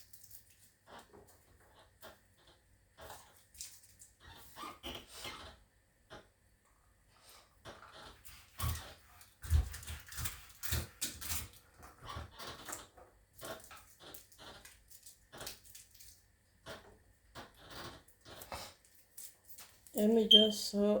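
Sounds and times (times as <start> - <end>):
garlic skins crackling: 13.5 - 16.3.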